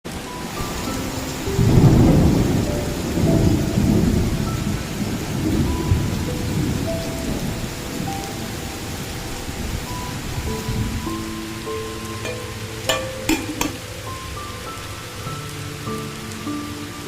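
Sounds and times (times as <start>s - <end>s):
steady hiss: 7.5s - 17.0s
faint short musical notes: 12.2s - 14.0s.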